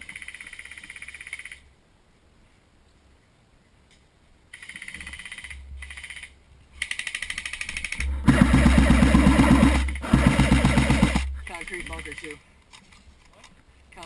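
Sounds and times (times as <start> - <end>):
airsoft guns firing full auto: 6.9 - 12.4.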